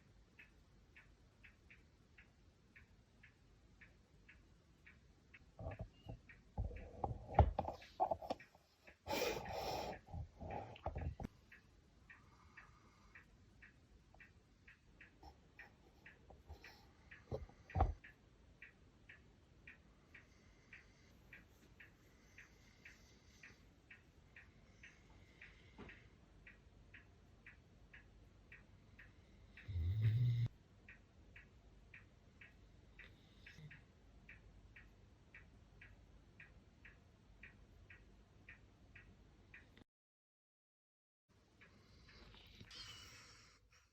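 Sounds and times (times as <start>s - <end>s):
faint even ticking: 0.0s - 39.8s
dog snoring: 29.6s - 30.5s.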